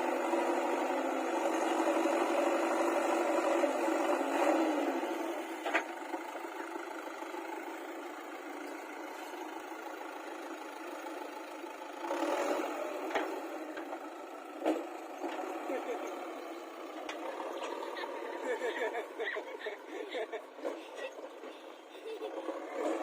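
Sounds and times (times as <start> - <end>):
backhoe diesel engine running: 0.0 - 23.0.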